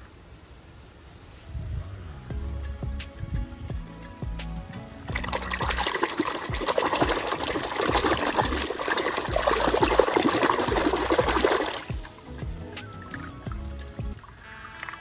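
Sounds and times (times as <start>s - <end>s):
water running and splashing: 5.0s - 15.0s.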